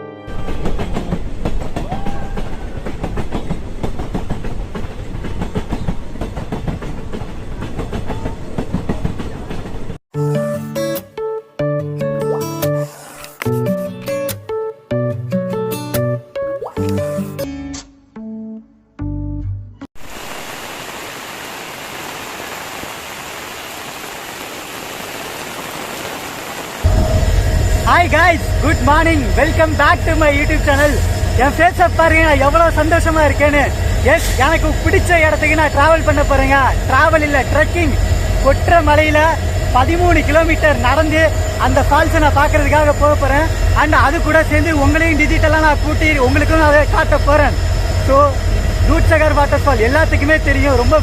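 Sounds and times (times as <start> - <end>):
train wheels clattering on track: 0.3 - 10.0
steady rain falling: 20.0 - 27.0.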